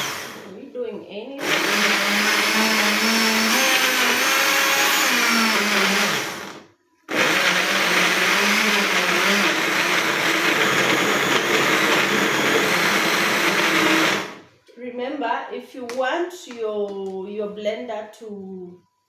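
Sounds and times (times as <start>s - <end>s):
blender running: 0.0s - 0.5s, 1.4s - 14.5s.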